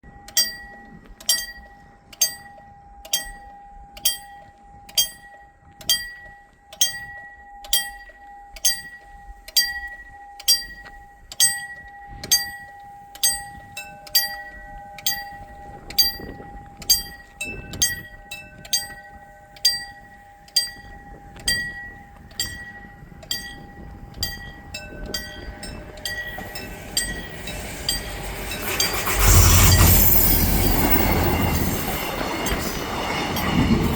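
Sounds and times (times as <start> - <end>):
diesel train approaching: 0.0 - 33.9
level crossing bells ringing: 0.0 - 33.9.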